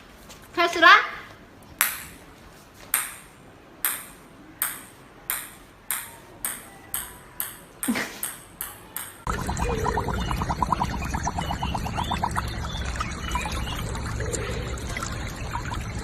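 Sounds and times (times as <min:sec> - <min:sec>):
loud busy sound: 0:09.2 - 0:16.0.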